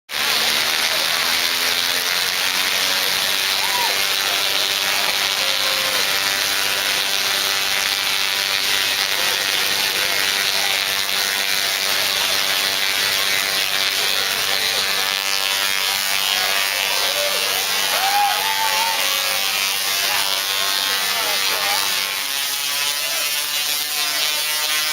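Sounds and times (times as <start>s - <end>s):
electrical sparks buzzing: 0.1s - 24.9s.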